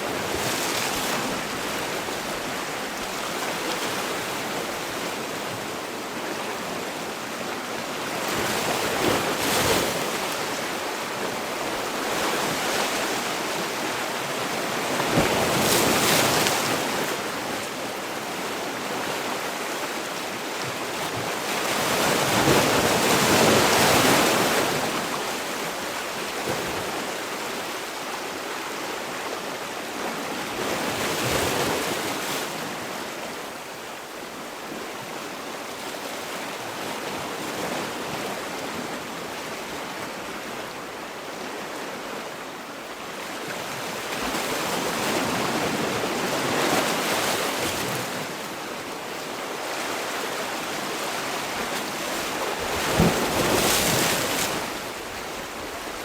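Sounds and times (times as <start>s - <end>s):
sea waves breaking: 29.4s - 56.0s.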